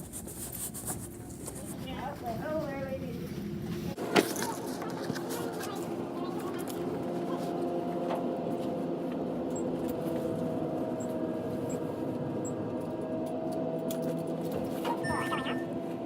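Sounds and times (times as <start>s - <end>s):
held tones: 15.0s - 15.8s.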